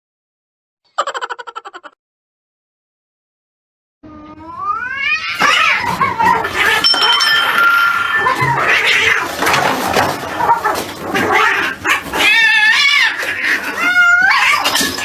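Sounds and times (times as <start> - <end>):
cat yowling: 4.3 - 9.4, 11.1 - 15.0.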